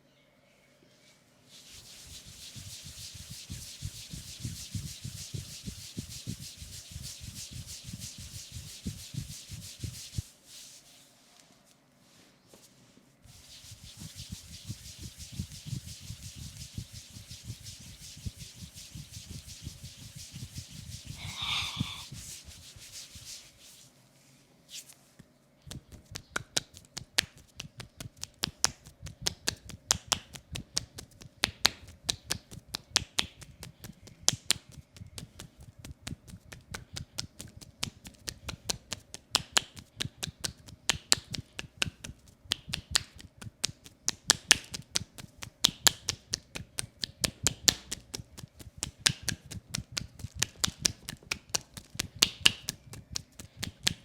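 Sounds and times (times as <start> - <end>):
hand slapping on a leg: 18.6 - 22.6, 25.7 - 54.0.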